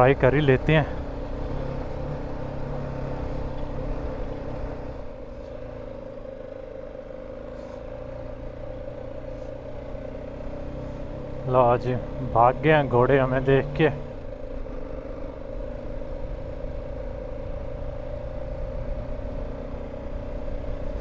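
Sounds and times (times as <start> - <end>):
motorcycle engine running: 0.0 - 21.0.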